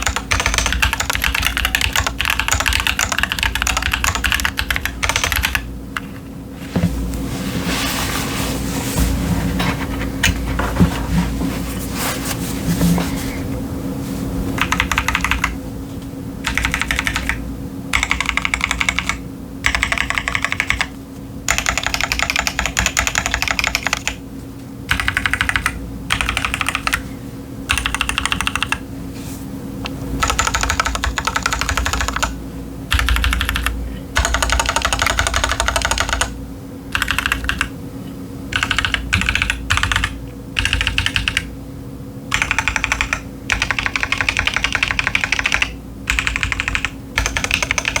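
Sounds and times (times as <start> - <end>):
mechanical keyboard typing: 0.0 - 6.3, 14.6 - 15.6, 16.4 - 20.9, 21.5 - 24.2, 24.9 - 27.0, 27.7 - 28.8, 30.2 - 36.3, 36.9 - 37.7, 38.5 - 41.5, 42.3 - 48.0
faint hum: 0.0 - 48.0.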